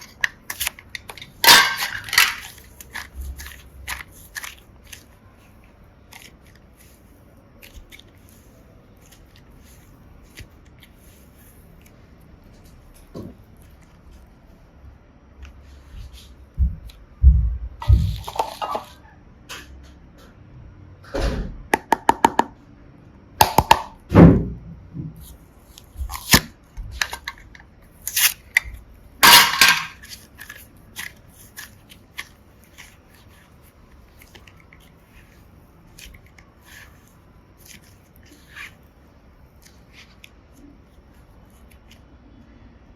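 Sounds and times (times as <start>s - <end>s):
plastic pieces clicking: 0.0s - 5.1s
hands squishing slime: 0.0s - 14.6s, 30.0s - 42.2s.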